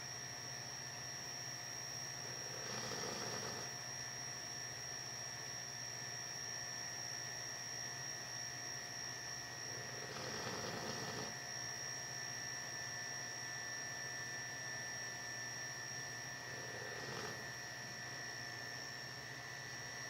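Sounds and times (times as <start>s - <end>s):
electrical hum: 0.0s - 5.7s, 7.2s - 20.0s
dog snoring: 2.1s - 3.8s, 9.6s - 11.4s, 16.3s - 17.6s.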